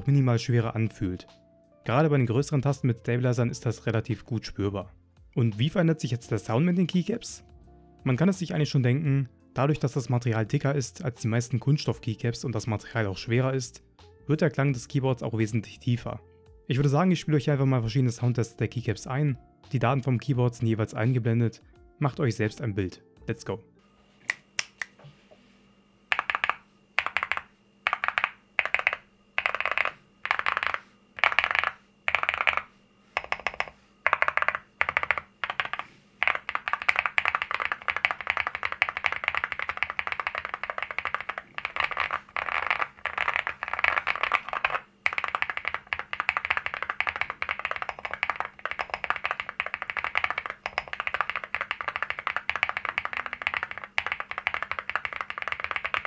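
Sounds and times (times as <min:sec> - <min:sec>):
mechanical keyboard typing: 0:26.1 - 0:56.0.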